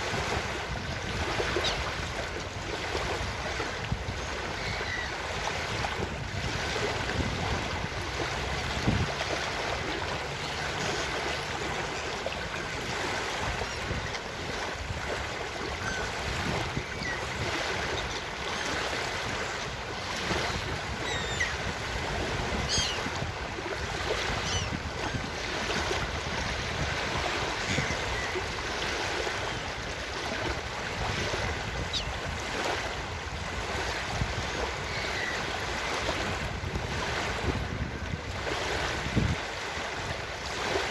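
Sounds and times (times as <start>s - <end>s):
ocean surf washing onto beach: 0.0s - 40.9s
wind: 0.0s - 40.9s
faint gull calls: 4.2s - 5.2s, 15.7s - 16.2s, 20.4s - 21.6s, 22.6s - 23.1s, 24.3s - 25.2s, 34.8s - 35.5s.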